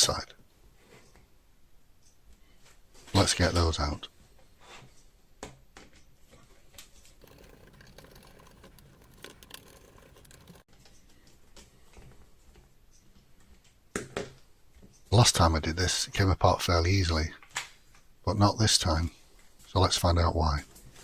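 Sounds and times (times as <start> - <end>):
screwdriver clicking and scraping: 7.2 - 10.6.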